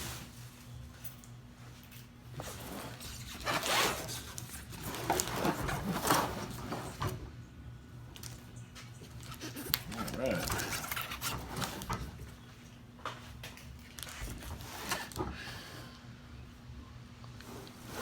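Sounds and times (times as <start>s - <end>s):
cardboard rustling: 2.4s - 7.0s.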